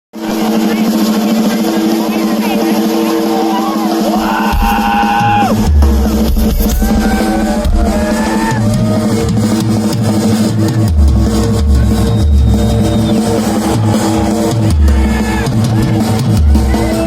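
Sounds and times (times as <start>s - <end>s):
live rock band playing: 0.2s - 17.0s
bass drum hits: 4.1s - 10.2s.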